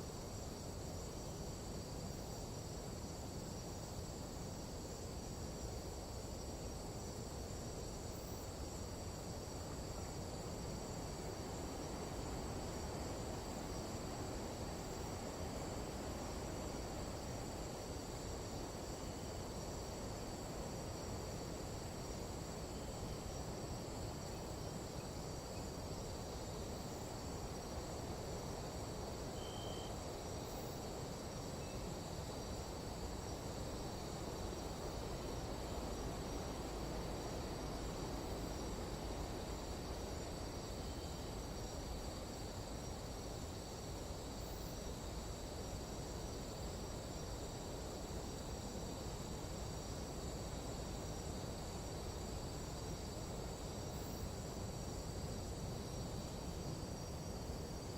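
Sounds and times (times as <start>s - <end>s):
insects trilling: 0.0s - 57.9s
faint short chirps: 29.4s - 29.9s.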